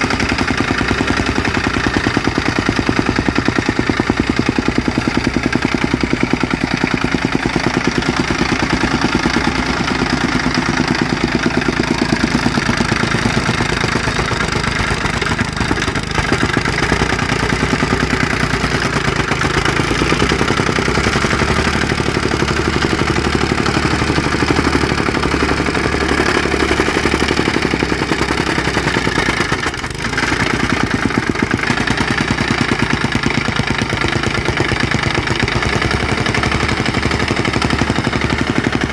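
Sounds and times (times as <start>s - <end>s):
soil compactor pounding: 0.0s - 38.9s.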